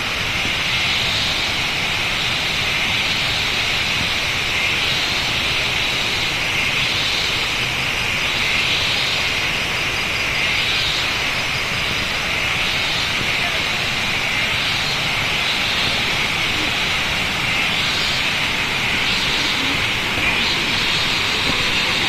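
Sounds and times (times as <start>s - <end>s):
high-pitched drone: 10.6s - 22.0s
waterfall rushing: 11.0s - 22.0s.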